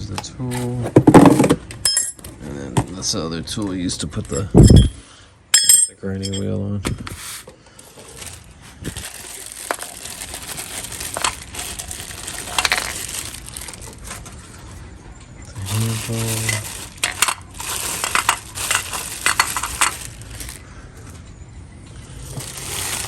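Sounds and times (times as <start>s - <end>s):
parts clicking and clinking: 1.3s - 2.3s, 4.2s - 7.1s, 16.4s - 21.2s
plastic and paper crinkling: 7.0s - 21.2s, 22.1s - 23.0s.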